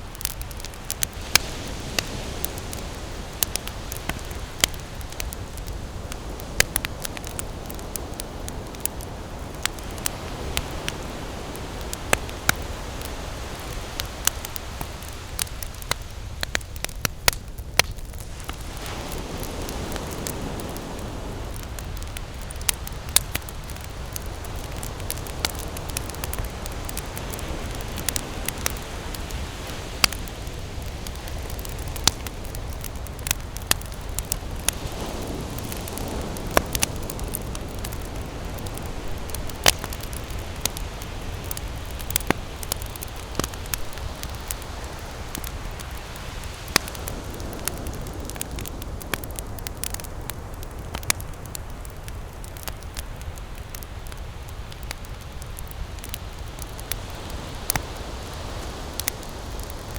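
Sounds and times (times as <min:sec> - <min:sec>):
campfire crackling: 0:00.0 - 0:59.9
fire pops and snaps: 0:00.0 - 0:59.9
low rush of burning: 0:00.0 - 0:59.9.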